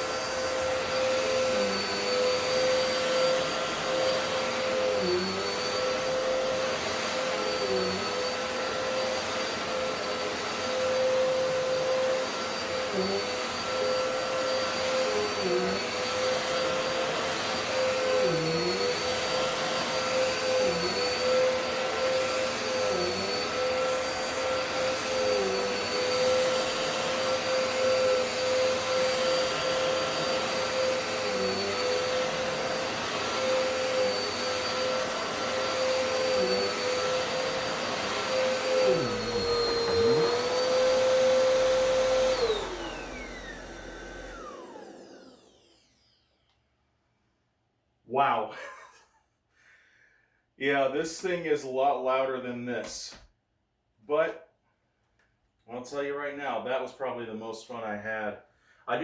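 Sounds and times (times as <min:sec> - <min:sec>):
vacuum cleaner whining: 0:00.0 - 0:46.6.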